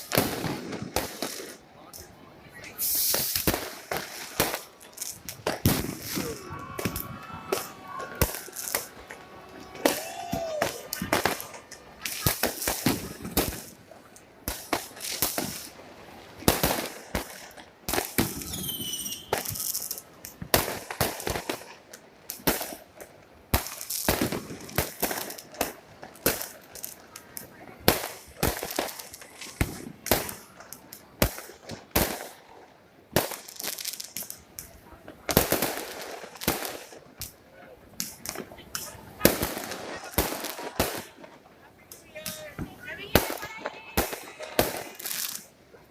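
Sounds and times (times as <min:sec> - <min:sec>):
fireworks bangs and crackles: 0:00.0 - 0:45.9
firework whistling glide: 0:05.0 - 0:13.1, 0:18.2 - 0:20.0.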